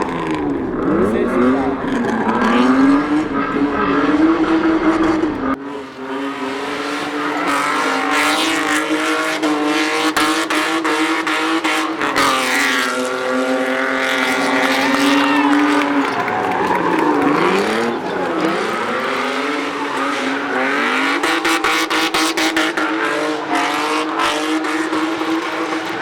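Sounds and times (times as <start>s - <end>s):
car engine at high revs: 0.0s - 26.0s
tyres squealing: 6.0s - 26.0s.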